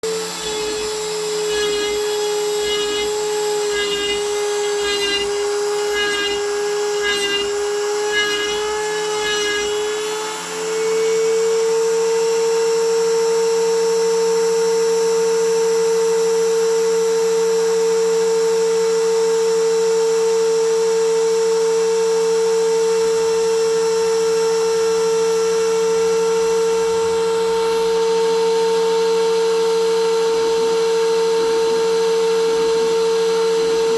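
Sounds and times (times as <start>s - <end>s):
milling machine spindle whine: 0.0s - 12.6s.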